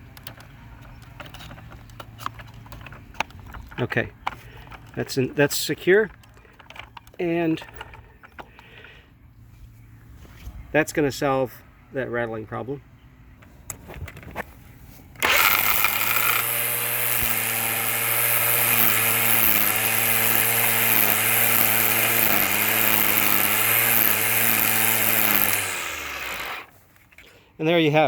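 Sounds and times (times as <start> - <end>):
trimmer line rattle: 0.0 - 9.0, 15.2 - 27.2
electric string trimmer running: 15.2 - 26.7.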